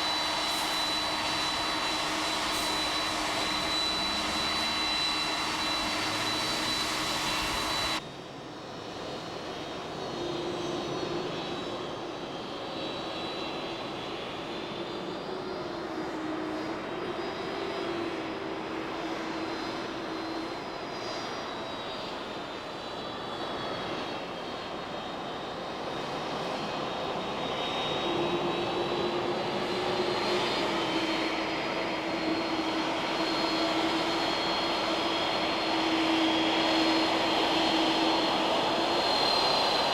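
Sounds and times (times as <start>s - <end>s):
jet engines running: 0.0s - 8.1s, 8.8s - 39.9s.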